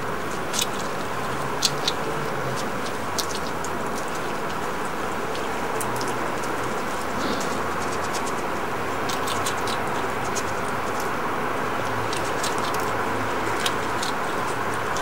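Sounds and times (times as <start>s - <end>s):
hedgehog crunching mealworms: 0.0s - 15.0s.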